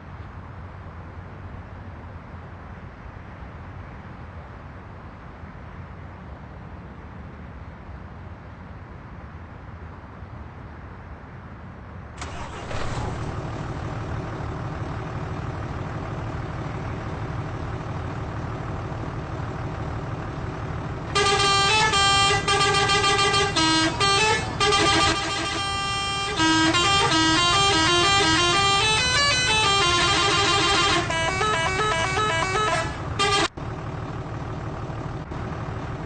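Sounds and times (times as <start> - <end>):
bus engine rumble: 0.0 - 36.0
multi-tone bus horn tune: 12.2 - 14.3, 14.9 - 33.6.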